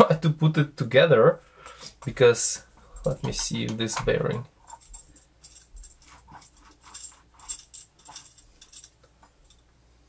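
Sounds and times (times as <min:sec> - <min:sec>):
small metal parts clicking: 0:02.9 - 0:09.7.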